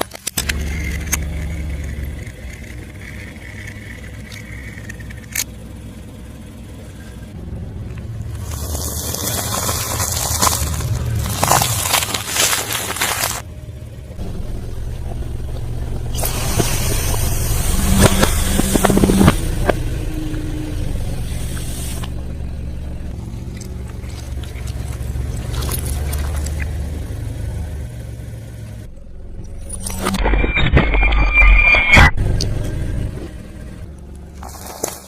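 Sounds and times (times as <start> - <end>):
chewing and crunching food: 8.4 - 13.4, 23.4 - 26.8, 34.4 - 35.0
steady low hum: 13.4 - 34.7.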